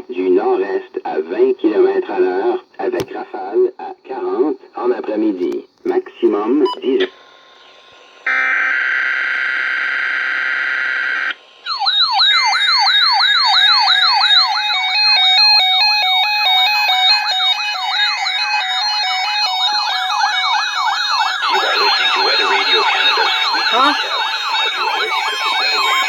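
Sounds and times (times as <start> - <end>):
siren-like wail: 8.2 - 26.0
stepped beeping tones: 21.4 - 26.0.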